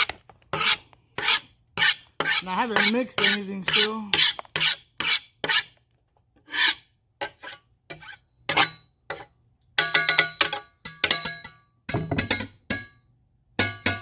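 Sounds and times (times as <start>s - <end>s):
utensil scraping chopped vegetables: 0.0s - 5.8s, 6.4s - 9.3s.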